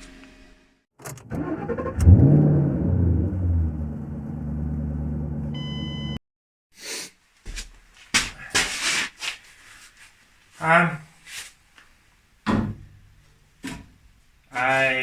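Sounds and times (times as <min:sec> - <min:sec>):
car engine starting and idling: 0:01.0 - 0:06.2
short beep: 0:05.6 - 0:06.2.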